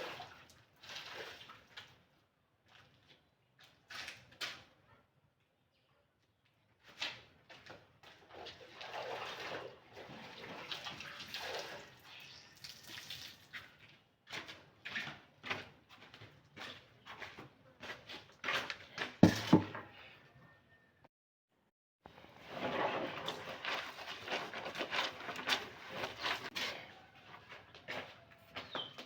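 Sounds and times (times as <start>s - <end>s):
clothes splashing in water: 0.0s - 2.1s, 8.2s - 12.0s.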